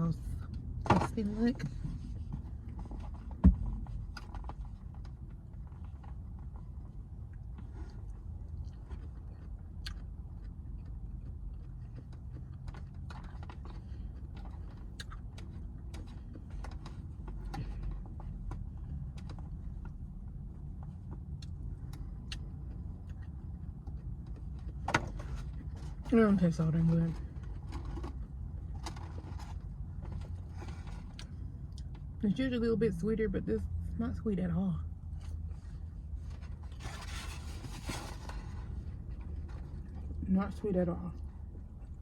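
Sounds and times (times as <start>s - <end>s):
low rumble inside a car: 0.0s - 42.0s
chewing crunches and mouth clicks: 4.1s - 20.0s, 20.8s - 24.8s.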